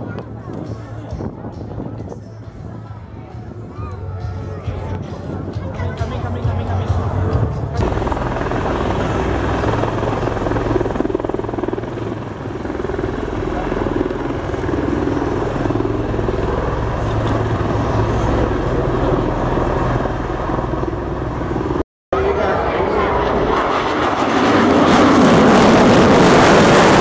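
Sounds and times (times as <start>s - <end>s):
tiltrotor aircraft rotor drone: 0.0s - 27.0s.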